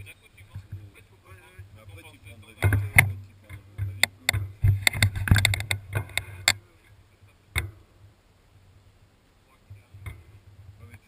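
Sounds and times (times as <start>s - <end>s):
wheelchair knocking and rattling: 2.5s - 6.3s.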